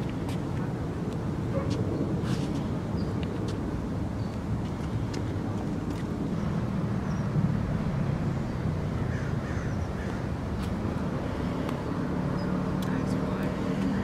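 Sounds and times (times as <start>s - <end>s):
steady low rumble: 0.0s - 14.0s.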